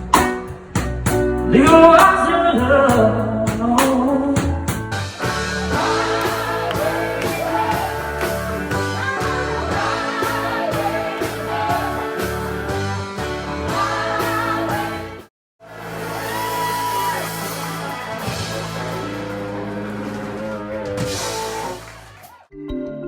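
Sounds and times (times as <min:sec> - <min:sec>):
song with singing and guitar: 0:01.4 - 0:15.2.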